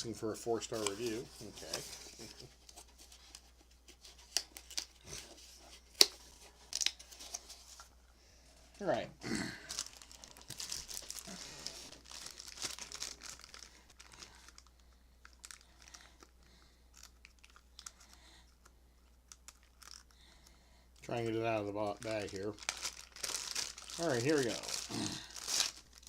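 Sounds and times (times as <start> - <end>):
plastic bag crinkling: 9.6 - 18.4, 19.3 - 20.2, 21.0 - 26.0.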